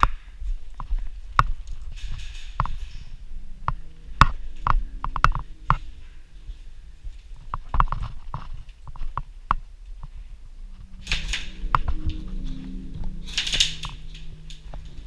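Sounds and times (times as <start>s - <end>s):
knocks and clicks: 3.6s - 6.0s.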